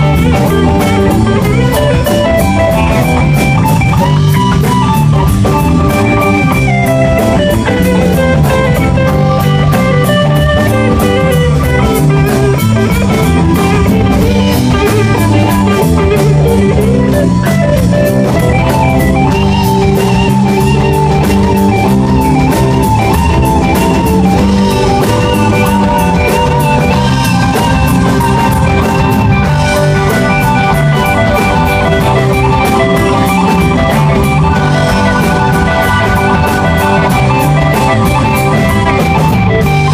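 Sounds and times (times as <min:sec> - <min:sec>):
rock band playing live: 0:00.0 - 0:39.9.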